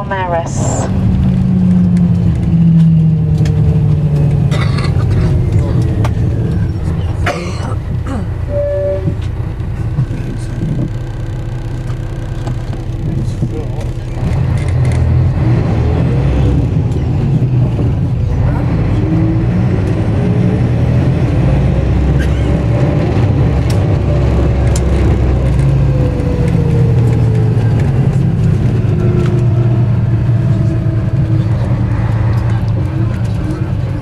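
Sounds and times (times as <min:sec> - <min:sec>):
diesel engine droning: 0:00.0 - 0:34.0.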